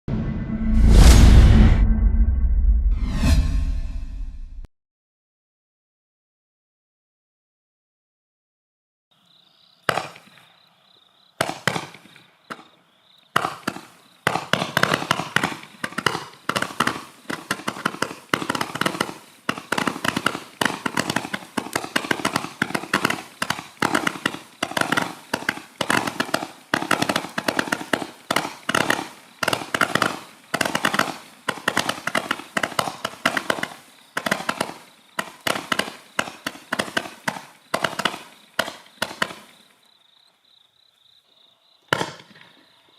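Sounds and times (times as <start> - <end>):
rapid barrage of sharp pops: 9.9 - 10.4, 11.4 - 12.7, 13.4 - 39.8, 41.9 - 42.5
firework fuse hiss: 13.4 - 39.6
roman candle shots: 13.4 - 39.6.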